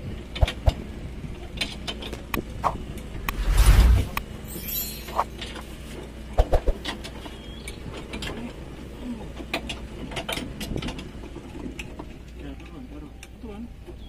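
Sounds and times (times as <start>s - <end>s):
steady low hum: 2.2s - 5.2s.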